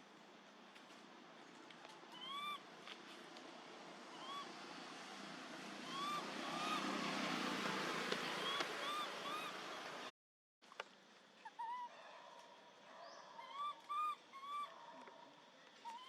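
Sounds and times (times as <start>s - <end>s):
baby monkey crying: 5.9s - 6.9s.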